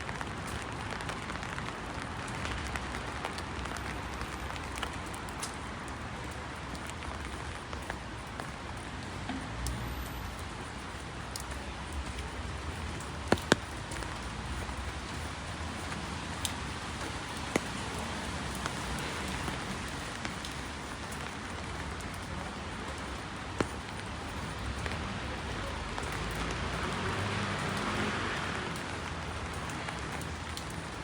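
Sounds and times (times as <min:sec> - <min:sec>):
raindrop ticks: 0:00.0 - 0:31.0
steady rain hiss: 0:00.0 - 0:31.0.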